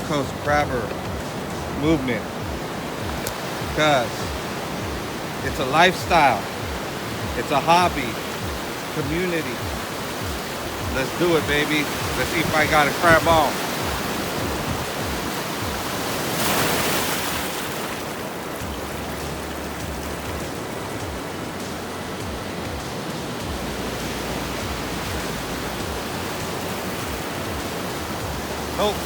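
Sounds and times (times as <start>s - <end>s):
ocean surf roaring: 0.0s - 29.0s
wind on microphone: 11.8s - 17.5s.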